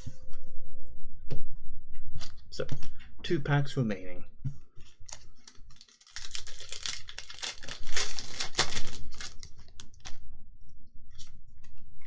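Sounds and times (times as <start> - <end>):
foil wrapper crinkling: 5.0 - 10.2
foil tearing: 5.1 - 10.2.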